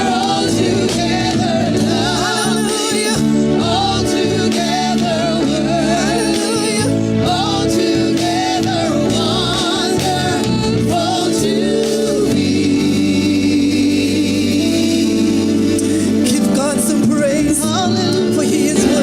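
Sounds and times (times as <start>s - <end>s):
gospel singing: 0.0s - 19.0s
held chords and bass: 0.0s - 19.0s.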